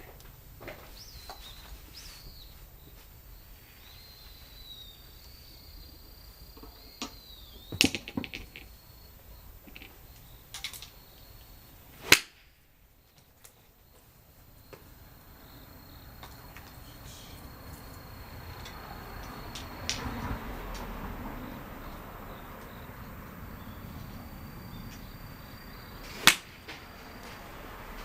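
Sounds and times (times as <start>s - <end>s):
faint high chirping tone: 0.7s - 11.9s, 12.8s - 19.9s, 21.4s - 26.1s
golf club striking ball: 12.0s - 12.7s, 26.1s - 26.9s.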